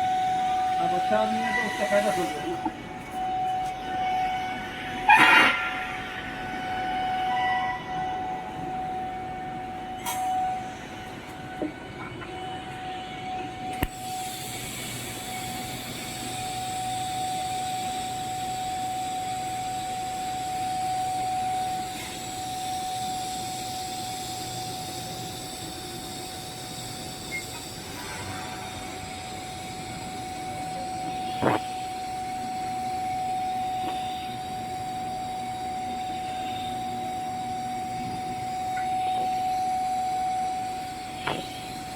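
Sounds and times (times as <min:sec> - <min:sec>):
welding arc hiss: 0:13.8 - 0:41.9.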